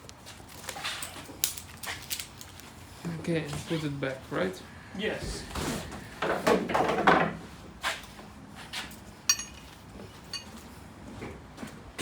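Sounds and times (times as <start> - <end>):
metal strap hardware clinking: 9.3 - 10.5.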